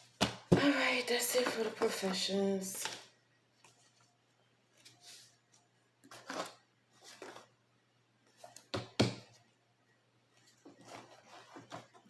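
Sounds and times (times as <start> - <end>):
cards rustling on a table: 10.4 - 12.0.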